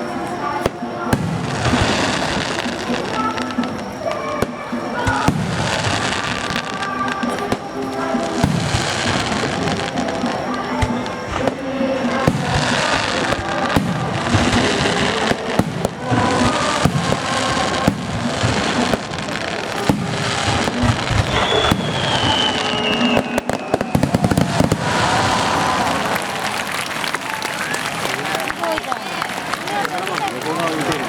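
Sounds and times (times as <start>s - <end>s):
falling firework whistle: 0.0s - 29.2s
firework crackling: 0.0s - 31.0s
fireworks bursting: 0.0s - 31.0s
music playing: 0.0s - 31.0s.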